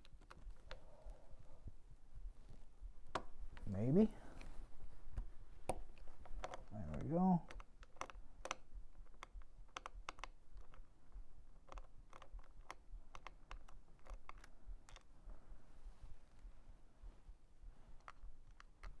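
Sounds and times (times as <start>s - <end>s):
small clicks of metal and plastic parts: 0.0s - 1.7s, 3.1s - 15.5s, 17.8s - 19.0s
small screwdriver being handled: 3.2s - 15.1s.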